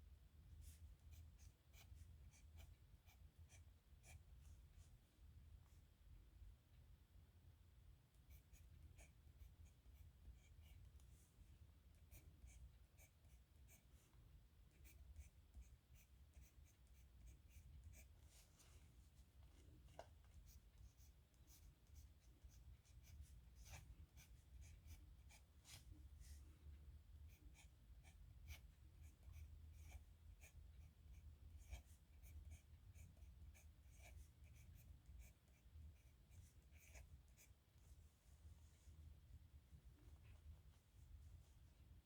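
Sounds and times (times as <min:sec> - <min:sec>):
low steady hum: 0:00.0 - 0:42.0
pen scratching on paper: 0:20.9 - 0:25.9, 0:31.6 - 0:37.5.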